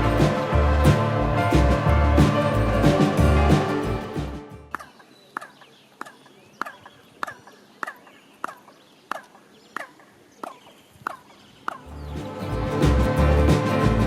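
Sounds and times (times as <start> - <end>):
music: 0.0 - 4.7, 11.9 - 14.0
chirping echo: 2.6 - 12.6.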